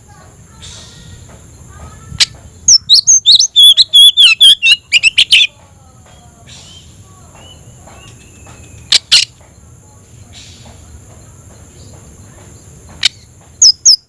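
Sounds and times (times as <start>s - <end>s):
bird singing whistled notes: 2.2s - 5.5s, 6.5s - 9.3s, 13.0s - 14.0s.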